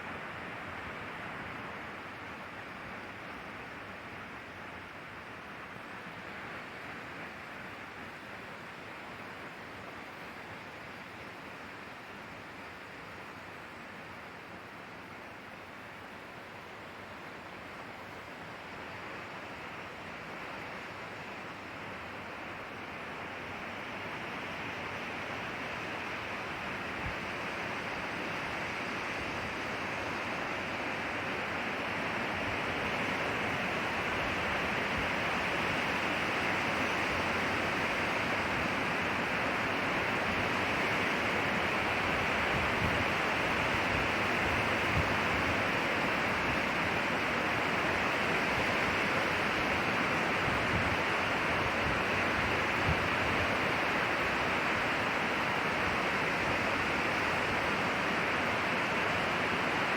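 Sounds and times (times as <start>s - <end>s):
wind through pine trees: 0.0s - 59.9s.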